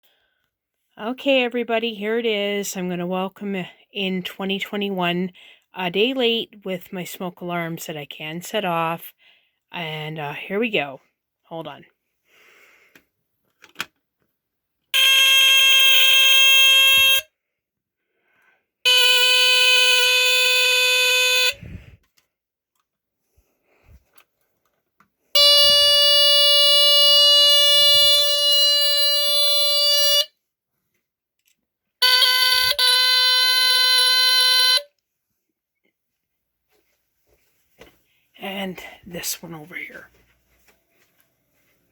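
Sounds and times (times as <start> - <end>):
smoke alarm tones: 15.0 - 17.3, 18.9 - 21.6, 25.4 - 30.3, 32.0 - 34.9.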